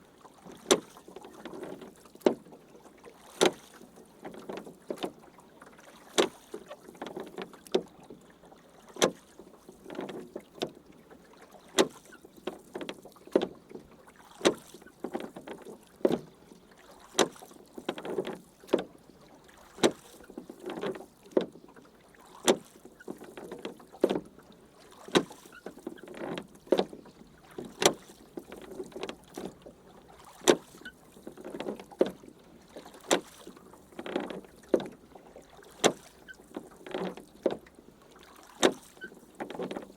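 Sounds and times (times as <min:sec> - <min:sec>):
oars splashing through water: 0:00.0 - 0:39.9
sharp oar knock: 0:00.5 - 0:02.4, 0:12.7 - 0:16.3, 0:17.1 - 0:18.9, 0:19.8 - 0:21.6, 0:22.4 - 0:24.3, 0:25.0 - 0:29.6, 0:30.2 - 0:35.0, 0:35.6 - 0:37.7, 0:38.3 - 0:39.9.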